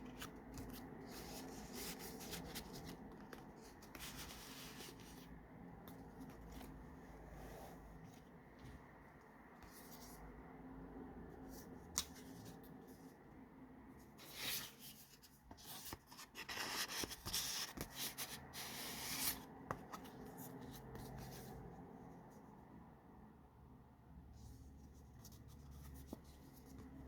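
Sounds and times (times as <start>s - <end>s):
paper pages rustling: 0.0s - 7.0s.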